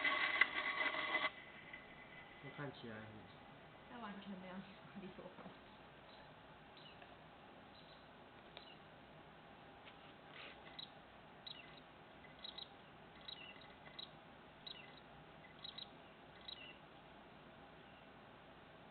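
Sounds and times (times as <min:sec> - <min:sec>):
low hiss: 0:01.3 - 0:18.9
small animal chirps: 0:08.6 - 0:08.8, 0:10.7 - 0:16.8.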